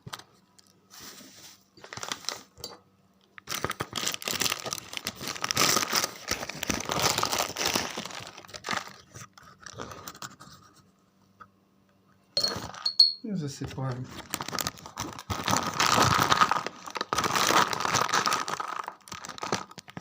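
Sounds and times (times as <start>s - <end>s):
bag crinkling and rustling: 1.0s - 2.6s, 3.4s - 9.8s, 14.0s - 20.0s.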